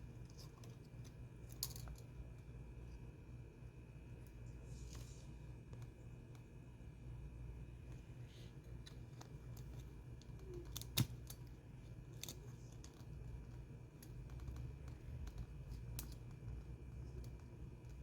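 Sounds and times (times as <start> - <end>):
steady low hum: 0.0 - 18.0
small clicks and taps: 8.7 - 18.0.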